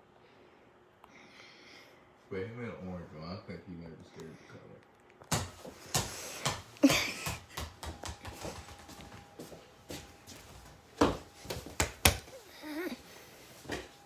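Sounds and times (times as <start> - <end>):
ball bouncing on hard floor: 5.2 - 12.4.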